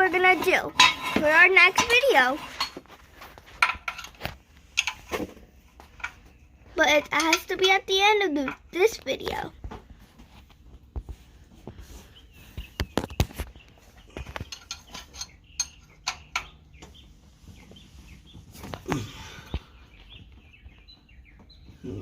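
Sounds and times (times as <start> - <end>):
birds chirping faintly: 0.0 - 22.0
wrench clinking on metal: 14.4 - 16.5.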